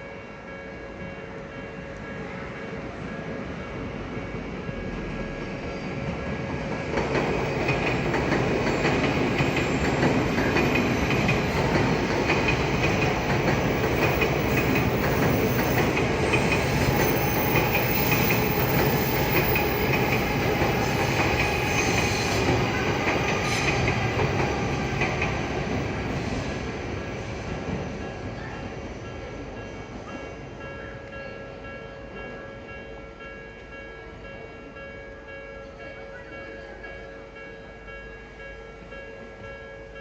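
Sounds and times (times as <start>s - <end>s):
electric train passing: 0.0s - 35.4s
wheels clacking over rail joints: 6.5s - 26.1s.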